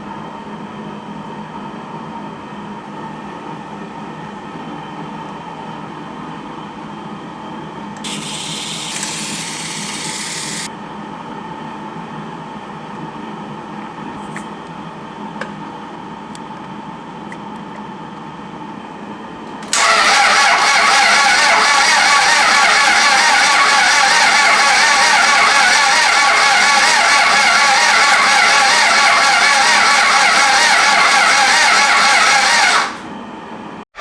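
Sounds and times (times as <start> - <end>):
hiss: 8.0 - 10.7
car engine running: 19.9 - 33.0.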